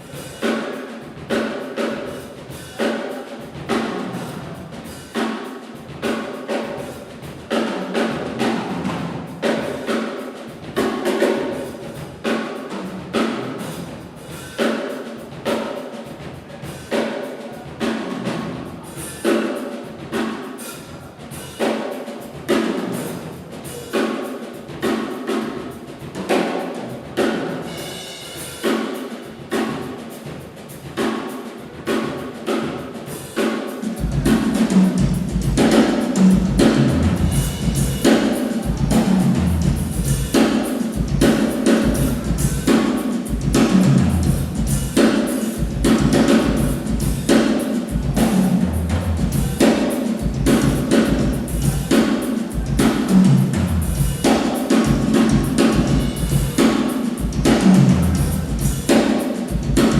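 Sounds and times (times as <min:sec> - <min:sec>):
drum kit groove: 0:00.0 - 0:59.9
bass drum: 0:34.0 - 0:59.9.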